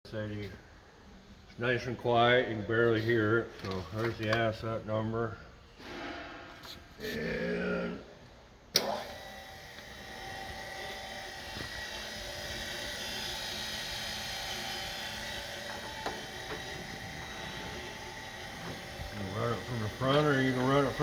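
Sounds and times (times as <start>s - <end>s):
grinder motor hum and whine: 8.8s - 21.0s.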